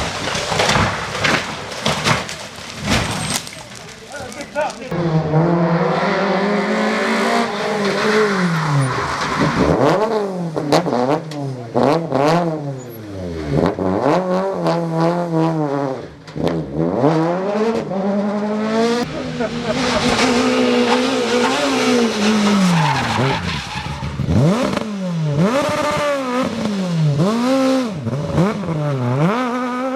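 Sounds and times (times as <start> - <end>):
exhaust cracks: 0.0 - 5.0
car engine at high revs: 4.9 - 29.9.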